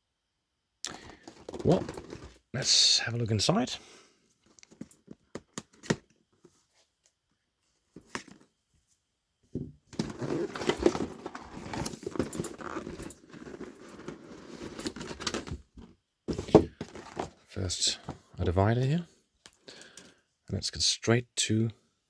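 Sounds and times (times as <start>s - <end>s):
rustling and scraping of contents: 0.9s - 3.0s, 3.6s - 18.4s.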